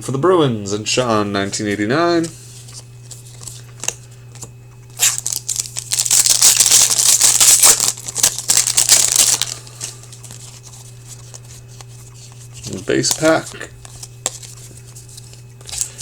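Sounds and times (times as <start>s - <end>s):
foil wrapper tearing and crinkling: 4.9s - 10.7s, 12.6s - 14.7s, 15.6s - 16.0s.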